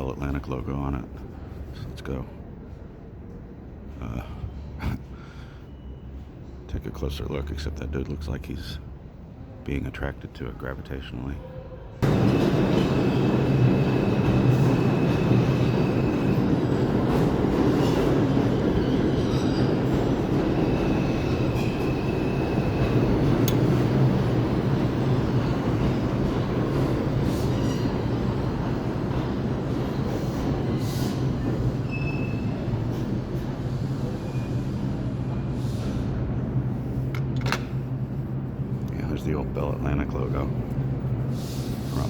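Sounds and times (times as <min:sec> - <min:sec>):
subway train rail rumble: 0:00.0 - 0:42.0
wheel squeals: 0:30.2 - 0:32.9, 0:33.7 - 0:35.0.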